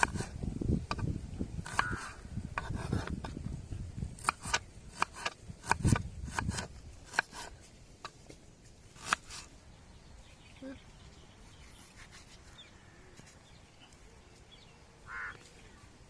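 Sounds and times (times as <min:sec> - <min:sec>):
rubbing and scraping: 0:00.0 - 0:09.6, 0:11.5 - 0:13.4.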